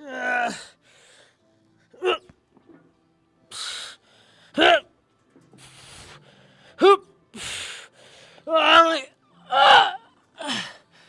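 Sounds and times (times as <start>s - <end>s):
man grunting and groaning: 8.5s - 10.8s.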